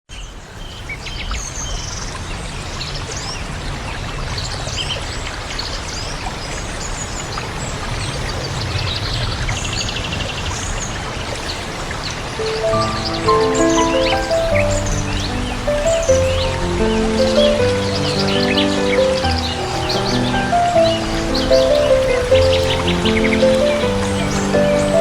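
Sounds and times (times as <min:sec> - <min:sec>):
small birds chirping: 0:12.4 - 0:25.0
soft music: 0:12.4 - 0:25.0
steady rushing noise: 0:12.4 - 0:25.0.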